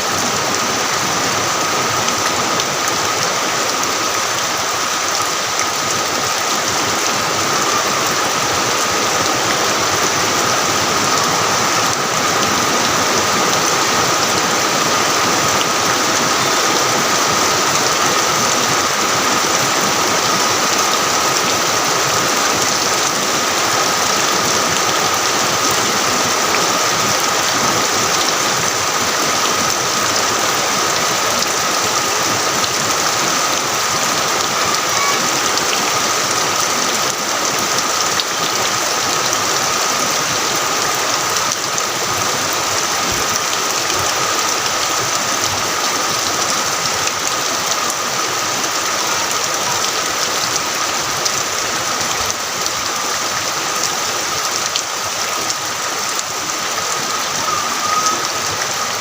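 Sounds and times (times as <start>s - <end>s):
heavy rain: 0.0s - 59.0s
faint steady high tone: 57.0s - 58.4s.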